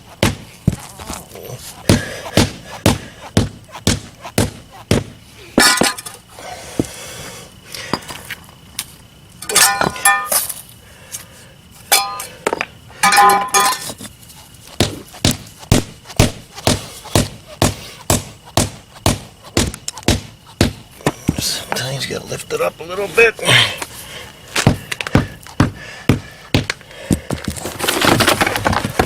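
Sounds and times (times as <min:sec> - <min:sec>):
rubber mallet pounding pavers: 0:00.0 - 0:07.0, 0:11.9 - 0:21.8, 0:24.6 - 0:29.0
pavers clinking together: 0:09.4 - 0:10.6, 0:11.9 - 0:14.0.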